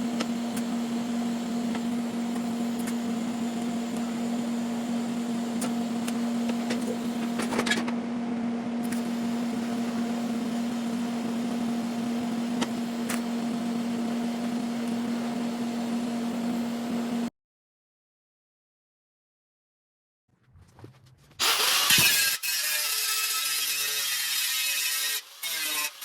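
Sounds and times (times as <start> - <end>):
low machine hum: 0.0 - 17.3.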